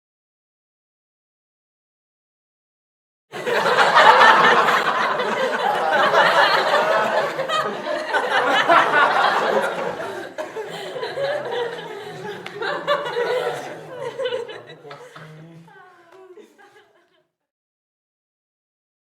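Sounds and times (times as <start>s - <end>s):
audience laughter: 3.3s - 17.2s.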